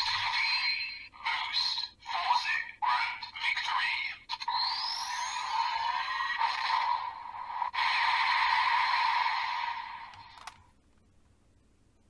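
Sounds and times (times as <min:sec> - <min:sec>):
toy click: 0:10.1 - 0:10.6.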